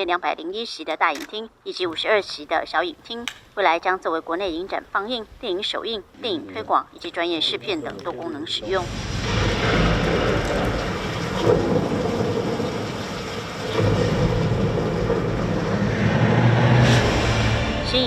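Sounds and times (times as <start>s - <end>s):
steady rain: 8.6s - 17.2s
rolling thunder rumble: 8.7s - 18.0s.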